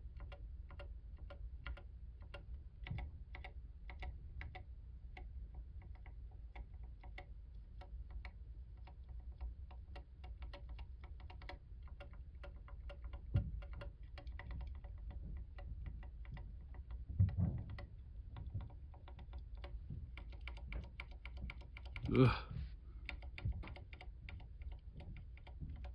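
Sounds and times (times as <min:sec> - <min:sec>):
mechanical keyboard clacks: 0:08.8 - 0:17.1, 0:23.0 - 0:25.9
dull thumps: 0:17.1 - 0:17.8.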